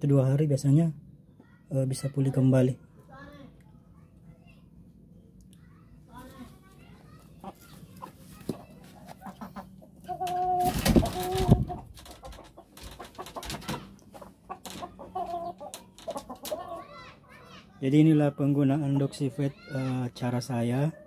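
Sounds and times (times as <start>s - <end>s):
chicken clucking and squawking: 7.3s - 17.5s.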